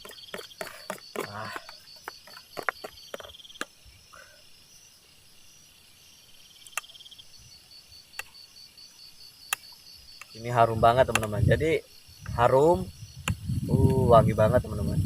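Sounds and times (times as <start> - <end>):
faster insect trill: 0.0 - 14.6
insect pulsing trill: 0.0 - 15.0
sharp clicks: 11.1 - 11.4.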